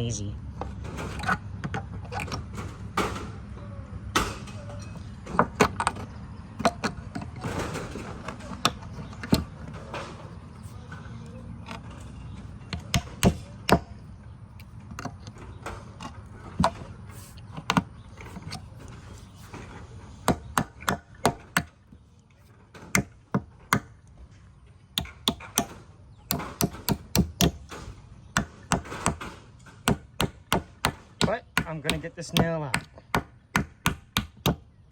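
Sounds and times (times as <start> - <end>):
hammer knocking on nail in wood: 12.7 - 14.0, 20.2 - 21.7, 22.8 - 23.9, 25.0 - 34.7.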